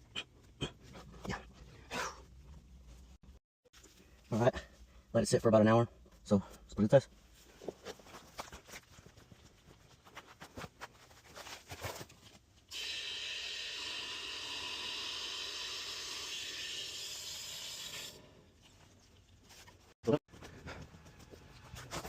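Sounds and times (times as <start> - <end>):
water rushing through a valve: 12.7 - 18.3.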